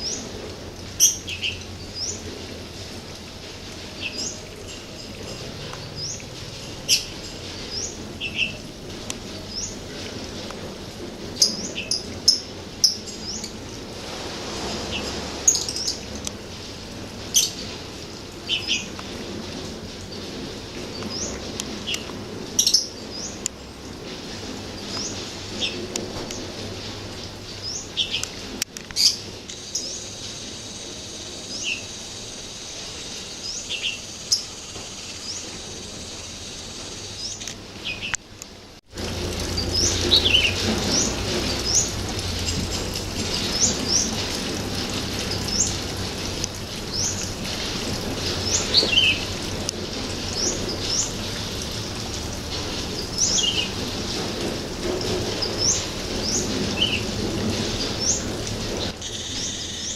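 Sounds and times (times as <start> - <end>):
birds chirping: 3.7 - 10.4, 14.7 - 16.4, 39.4 - 59.9.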